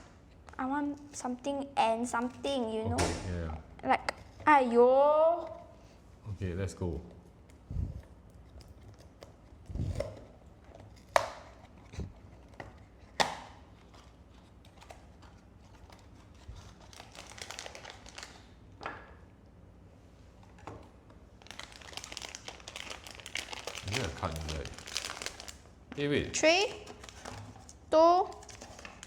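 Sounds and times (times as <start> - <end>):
packaging crinkling: 8.5 - 18.6, 21.3 - 26.1, 26.8 - 29.0.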